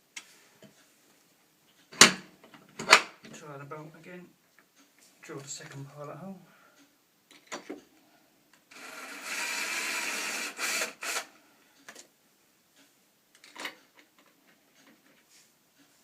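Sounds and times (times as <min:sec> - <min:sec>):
power drill running: 0:08.7 - 0:11.3.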